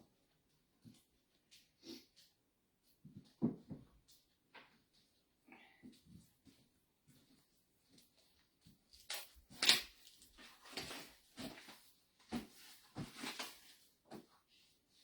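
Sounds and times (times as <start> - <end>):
cardstock and tools rustling and knocking: 3.1 - 4.0, 9.1 - 14.3.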